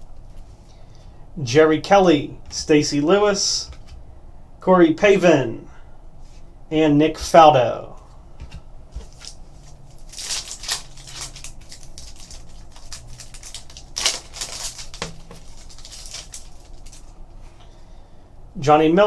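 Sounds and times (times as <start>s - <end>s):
trading cards rustling: 8.4s - 17.5s.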